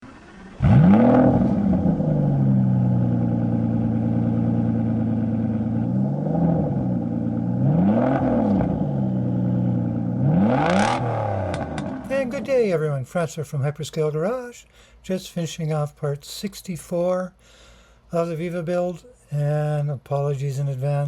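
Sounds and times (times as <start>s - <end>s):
car engine revving: 0.0s - 12.6s
car engine starting and idling: 0.0s - 13.7s.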